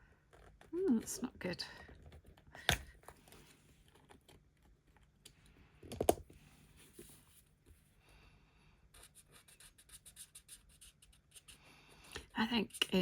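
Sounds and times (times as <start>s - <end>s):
marker scratching on card: 8.9s - 11.6s.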